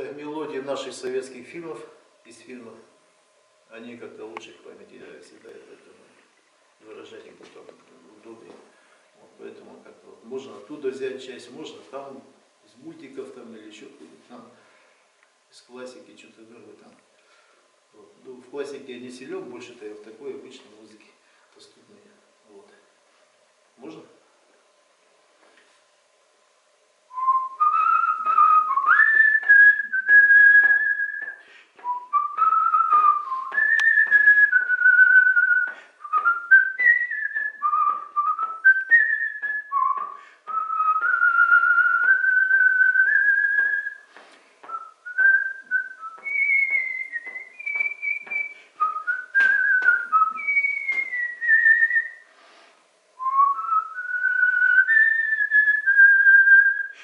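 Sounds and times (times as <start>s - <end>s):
man whistling a melody: 27.1s - 52.3s, 53.2s - 57.0s.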